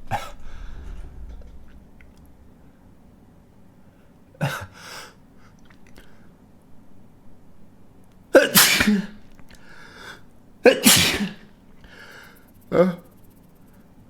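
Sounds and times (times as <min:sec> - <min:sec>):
man sneezing: 0:08.4 - 0:09.2, 0:10.7 - 0:11.4
breathy inhale: 0:09.5 - 0:10.3, 0:11.8 - 0:12.4.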